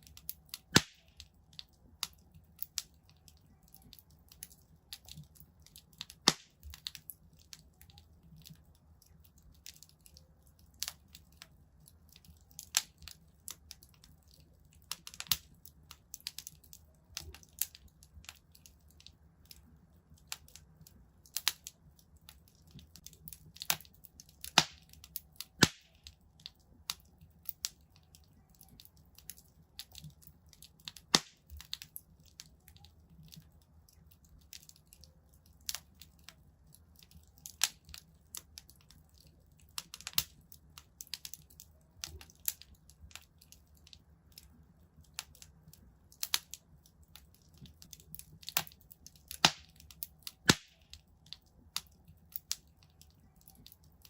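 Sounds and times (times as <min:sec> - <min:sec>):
low steady hiss: 0:00.0 - 0:54.0
wood fire crackling: 0:00.0 - 0:54.0.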